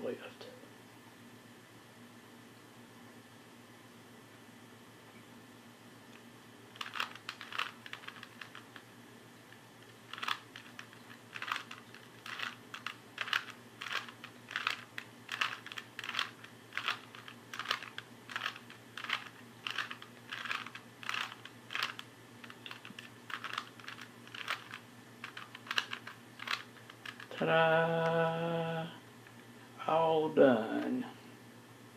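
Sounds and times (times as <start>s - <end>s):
puzzle cube plastic clicks: 6.7s - 8.8s, 9.8s - 27.4s.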